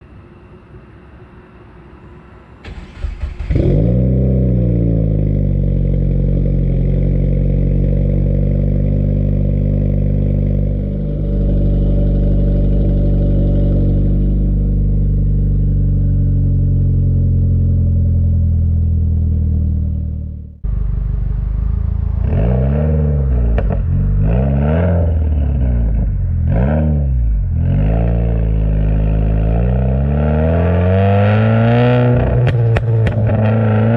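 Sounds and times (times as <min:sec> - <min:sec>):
car starter cranking: 0:02.6 - 0:04.0
car engine idling: 0:02.6 - 0:27.6, 0:32.1 - 0:33.9
car engine revving: 0:02.6 - 0:33.9.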